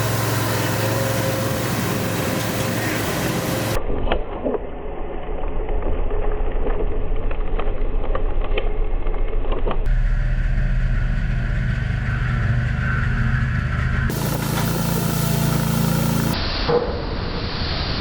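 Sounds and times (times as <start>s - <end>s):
skid steer engine running: 0.0s - 3.8s, 9.8s - 16.4s.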